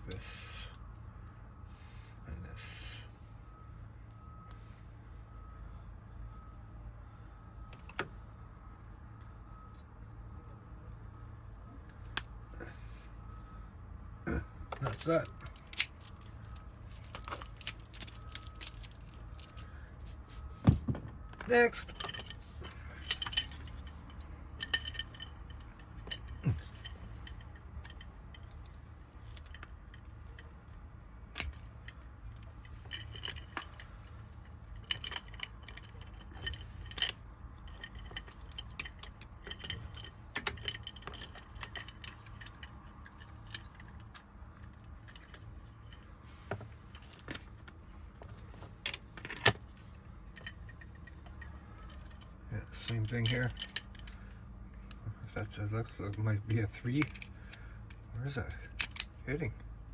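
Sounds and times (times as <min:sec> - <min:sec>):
steady low hum: 0:00.0 - 0:59.9
small metal clicks and clinks: 0:14.7 - 0:19.7, 0:21.8 - 0:30.5, 0:31.4 - 0:46.1, 0:48.7 - 0:59.2.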